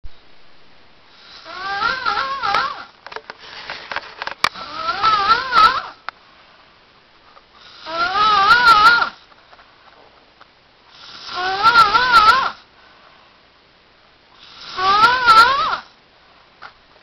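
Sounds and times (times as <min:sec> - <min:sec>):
snoring with whistle-like tone: 0:01.1 - 0:02.9, 0:04.5 - 0:06.0, 0:07.6 - 0:09.2, 0:10.9 - 0:12.6, 0:14.4 - 0:16.0
quiet breathing: 0:06.0 - 0:08.0, 0:12.6 - 0:13.6.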